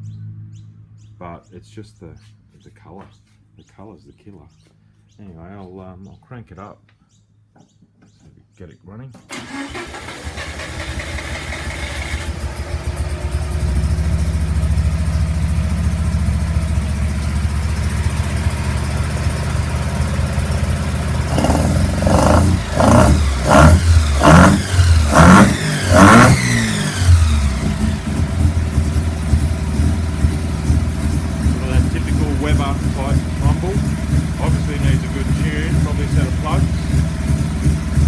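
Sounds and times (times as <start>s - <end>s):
rotary engine rumbling and revving: 9.4s - 38.0s.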